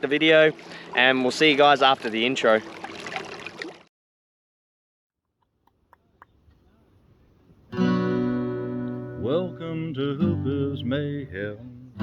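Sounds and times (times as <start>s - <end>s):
acoustic guitar strummed chords: 7.7s - 12.0s.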